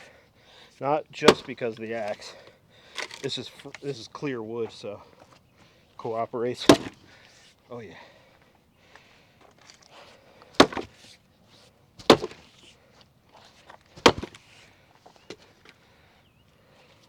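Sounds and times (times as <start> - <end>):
axe splitting firewood: 1.1 - 5.3, 6.0 - 8.1, 9.4 - 11.2, 12.0 - 12.7, 13.3 - 15.8
clatter of wood: 1.2 - 4.0, 6.6 - 7.1, 9.4 - 11.2, 12.0 - 12.7, 13.3 - 15.8.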